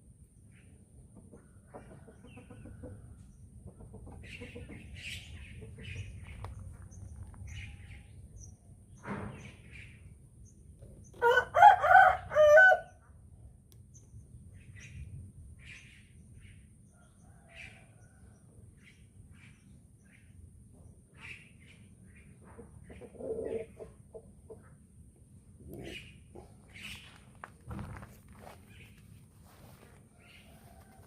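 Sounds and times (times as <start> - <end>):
small birds chirping: 0.4 - 11.2, 25.6 - 31.0
rooster crowing: 11.2 - 13.0.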